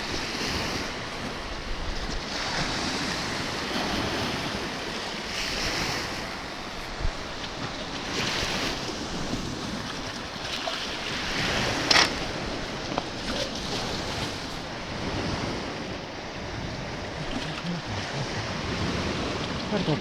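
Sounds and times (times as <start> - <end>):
sea waves washing in: 0.0 - 20.0
wind buffeting microphone: 0.0 - 20.0.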